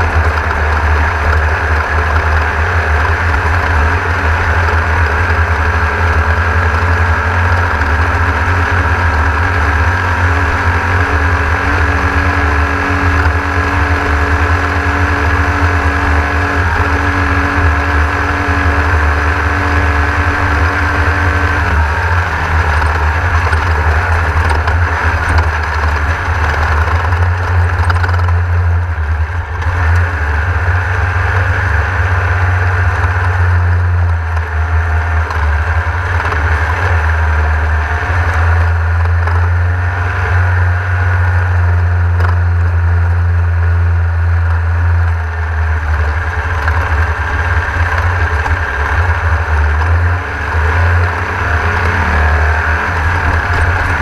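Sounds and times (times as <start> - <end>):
race car engine droning: 0.0 - 54.0
road and wind noise: 0.0 - 54.0.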